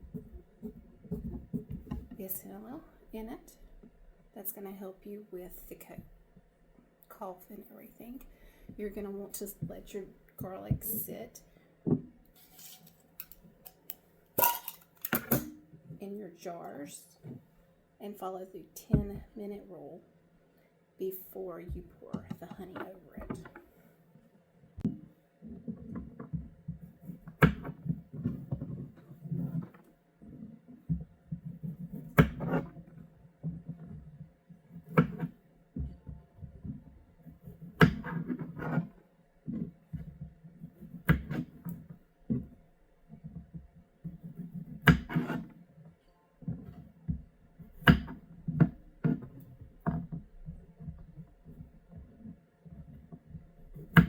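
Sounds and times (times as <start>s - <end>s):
low thuds and handling noise: 0.0s - 2.2s.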